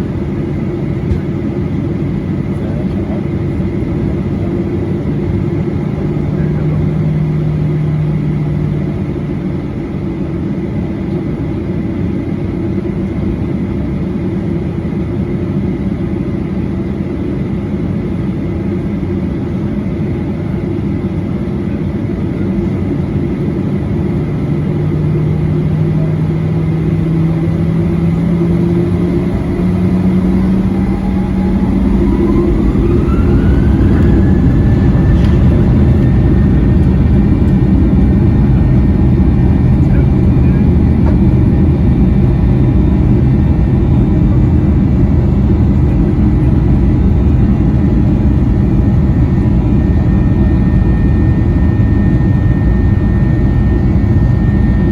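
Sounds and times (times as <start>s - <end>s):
jet engines rumbling in cabin: 0.0s - 54.9s
engine whine rising in pitch: 4.2s - 9.6s, 24.1s - 54.9s.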